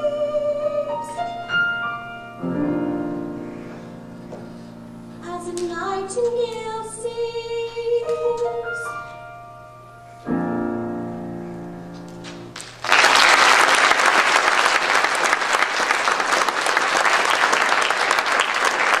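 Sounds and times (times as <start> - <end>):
piano chord: 0.0 - 12.6
audience applause: 12.5 - 19.0.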